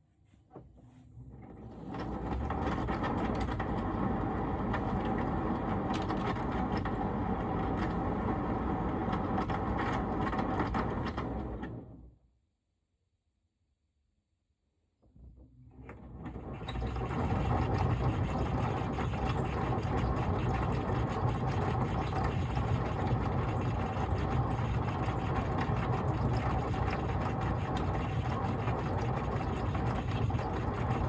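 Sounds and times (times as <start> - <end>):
tumble dryer drum rumbling: 16.3 - 31.0.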